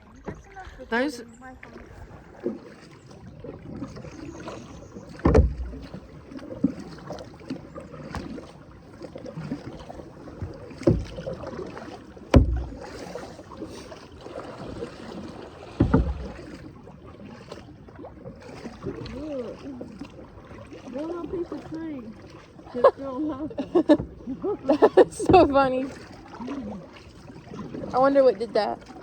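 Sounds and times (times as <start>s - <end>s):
water swishing against paddle: 0.0s - 29.0s
sharp knocks: 12.3s - 12.8s.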